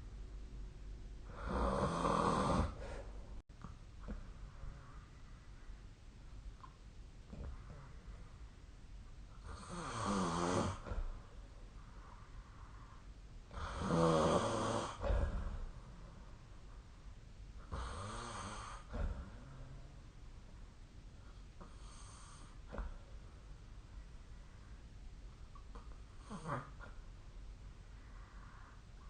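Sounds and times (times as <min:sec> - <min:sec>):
person snoring: 0:01.3 - 0:03.0, 0:09.4 - 0:11.0, 0:13.5 - 0:15.6.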